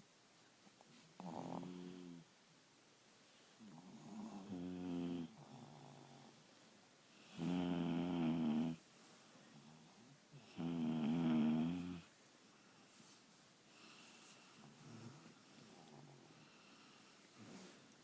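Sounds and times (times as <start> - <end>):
dog snoring loudly: 1.2 - 2.2, 3.7 - 6.3, 7.3 - 8.8, 10.4 - 12.1.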